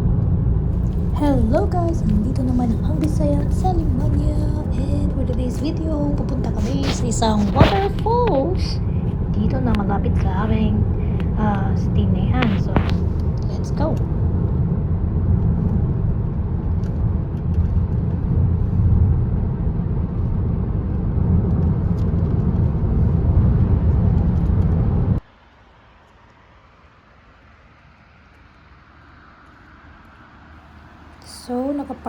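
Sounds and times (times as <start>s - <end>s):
road and engine rumble in car: 0.0s - 25.4s.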